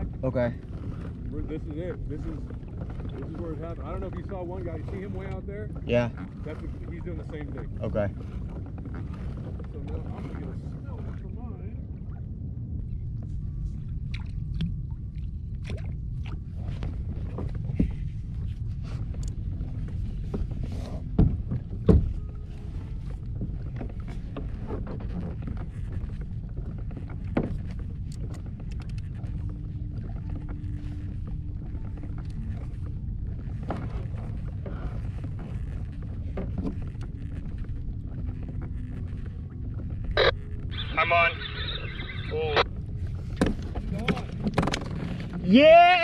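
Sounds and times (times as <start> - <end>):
water rumbling along hull: 0.0 - 46.0
sharp knocks on hull: 21.1 - 22.2.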